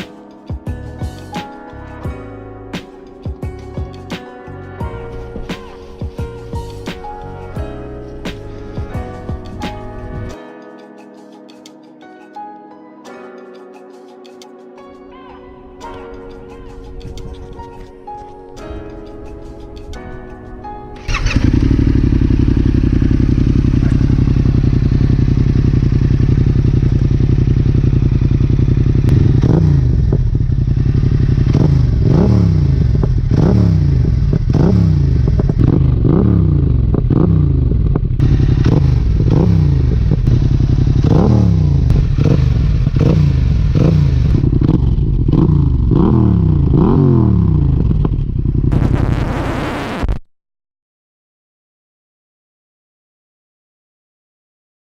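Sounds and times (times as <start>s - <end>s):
motorcycle engine idling and revving: 21.0s - 48.9s.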